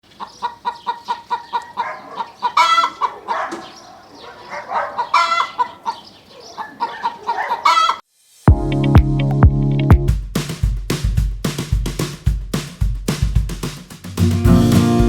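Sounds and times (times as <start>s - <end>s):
chickens clucking: 0.0s - 8.0s
chicken squawks: 0.1s - 8.0s
music with heavy beat: 8.5s - 15.0s.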